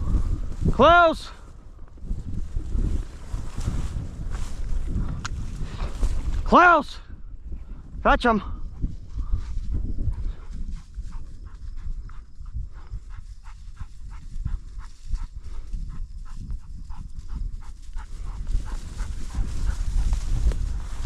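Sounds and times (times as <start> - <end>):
wind on microphone: 0.0 - 21.0
dog panting: 9.7 - 20.4.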